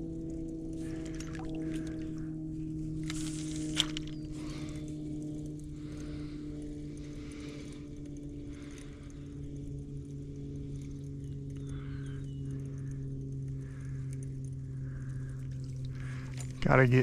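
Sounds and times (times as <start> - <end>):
low hum: 0.0 - 17.0
water sloshing around legs: 0.8 - 2.2.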